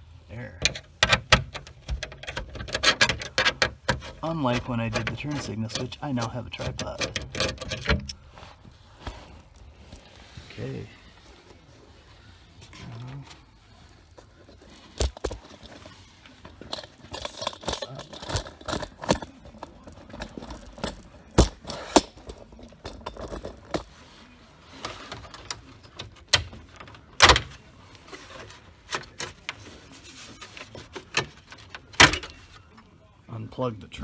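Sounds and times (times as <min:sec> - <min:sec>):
plastic trim panel rattling: 0:00.6 - 0:08.3.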